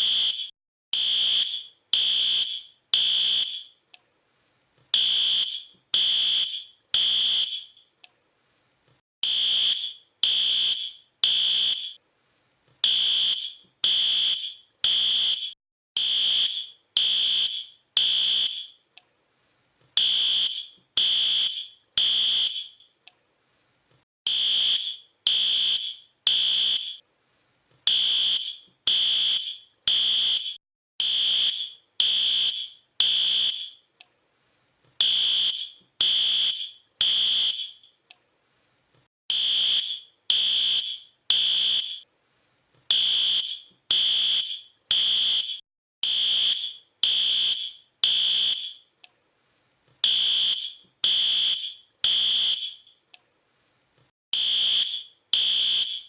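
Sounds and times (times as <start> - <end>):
fire alarm beeping: 0.0 - 3.8, 5.0 - 7.8, 9.2 - 12.0, 12.8 - 18.8, 20.0 - 22.9, 24.3 - 27.0, 27.9 - 33.8, 35.0 - 37.9, 39.3 - 42.0, 42.9 - 48.8, 50.0 - 52.9, 54.4 - 56.0.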